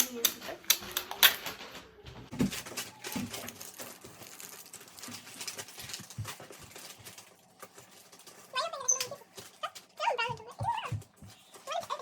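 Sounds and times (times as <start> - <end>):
wrapping paper crinkling: 2.4 - 12.0.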